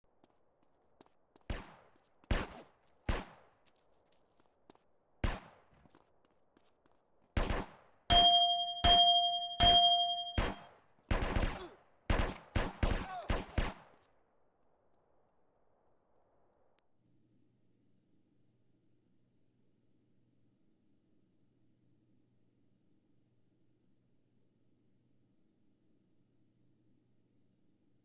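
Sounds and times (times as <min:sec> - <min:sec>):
ringing metallic dings: 0:08.1 - 0:10.6.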